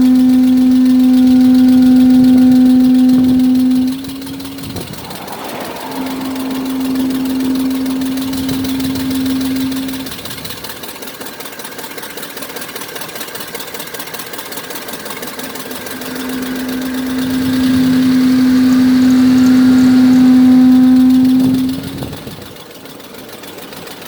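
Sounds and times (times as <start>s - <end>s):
steady fixed-pitch drone: 0.0s - 10.8s, 14.9s - 22.4s
engine running: 0.0s - 24.0s.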